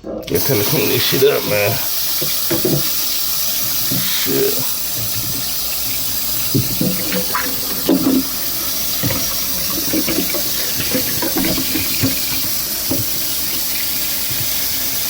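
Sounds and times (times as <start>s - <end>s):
sink tap running: 0.0s - 15.0s
things clattering under water: 2.2s - 3.0s, 6.5s - 8.4s, 9.0s - 13.2s.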